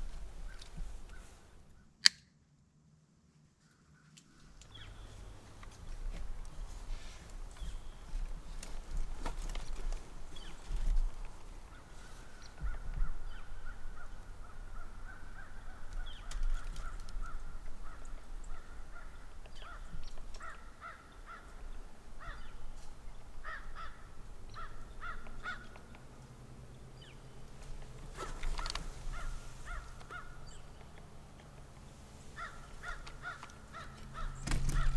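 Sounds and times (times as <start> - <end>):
crows cawing: 11.7 - 22.6, 23.4 - 26.0, 28.2 - 30.5, 32.3 - 34.9.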